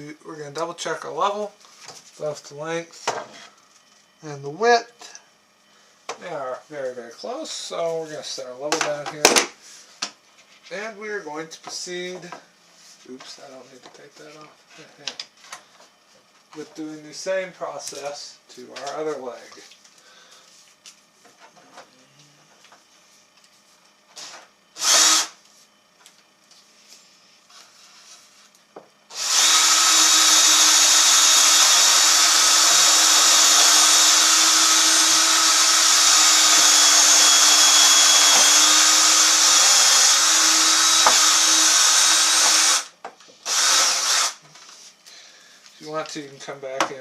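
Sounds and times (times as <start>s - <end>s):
electric drill boring wood: 24.2s - 25.4s, 29.1s - 44.4s.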